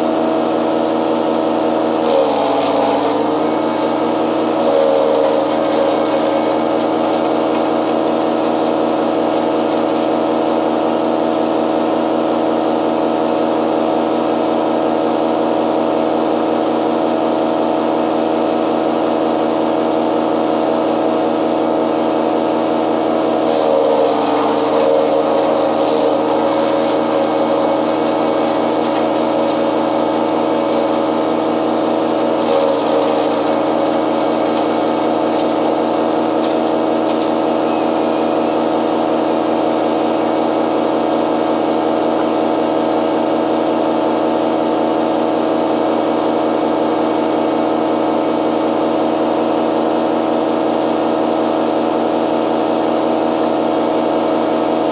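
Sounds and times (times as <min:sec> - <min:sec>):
chainsaw cutting wood: 0:01.9 - 0:11.0, 0:23.4 - 0:40.4.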